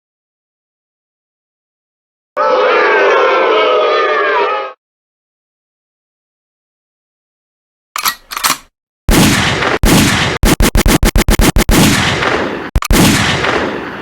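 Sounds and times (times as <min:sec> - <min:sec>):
gunfire blasts: 0:08.5 - 0:14.0
machine-gun fire: 0:08.5 - 0:14.0.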